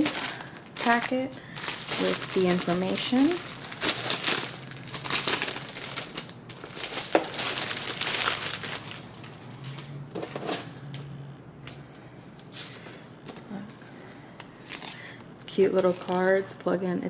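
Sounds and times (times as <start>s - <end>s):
packaging rustling and crinkling: 0.0s - 10.7s.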